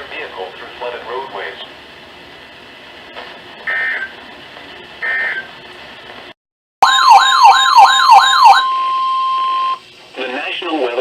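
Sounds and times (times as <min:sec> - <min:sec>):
warbling siren tone: 0:06.8 - 0:09.8.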